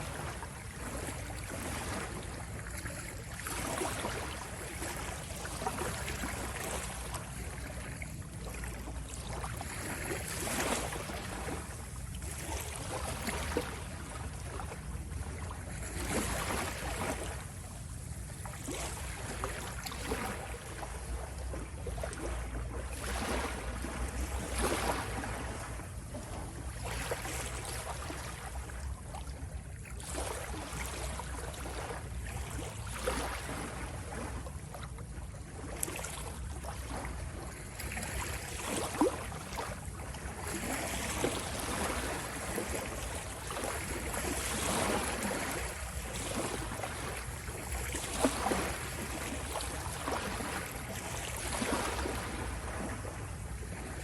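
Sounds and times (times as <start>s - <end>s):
sea waves washing in: 38.0s - 54.0s.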